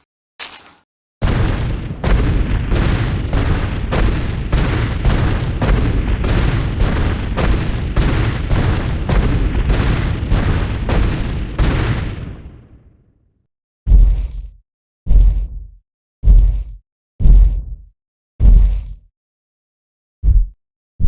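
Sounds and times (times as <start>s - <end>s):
heavy dinosaur footsteps: 1.2s - 11.3s, 16.2s - 17.8s.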